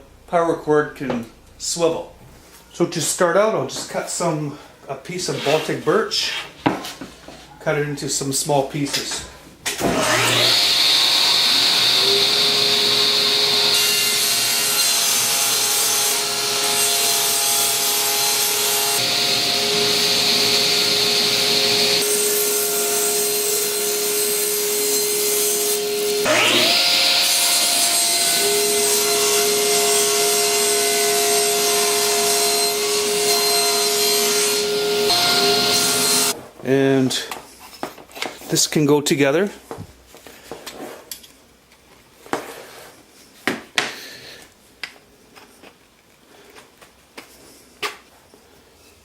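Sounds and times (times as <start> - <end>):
power saw cutting wood: 9.8 - 36.4.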